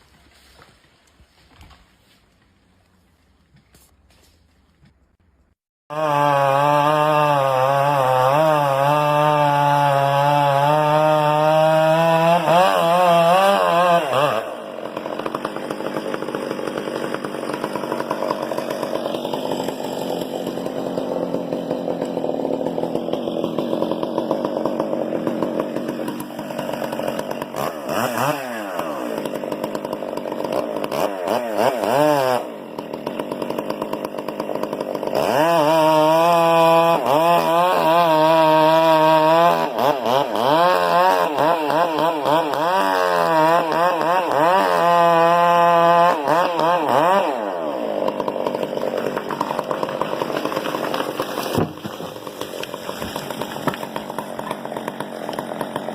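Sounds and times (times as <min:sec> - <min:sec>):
chainsaw cutting wood: 0:05.9 - 0:55.9.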